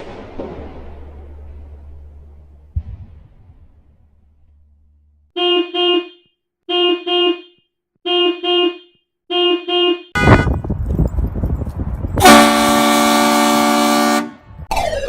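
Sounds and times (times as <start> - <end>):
short horn toots: 5.4 - 10.7, 12.2 - 14.5.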